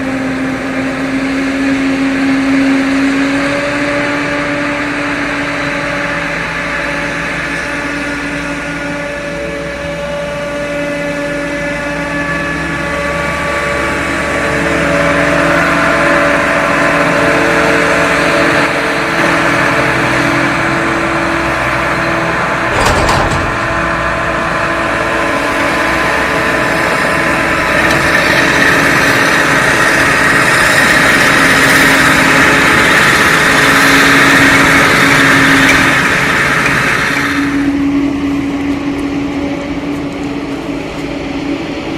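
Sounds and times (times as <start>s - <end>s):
diesel engines whining: 0.0s - 41.9s
knock: 22.8s - 23.9s.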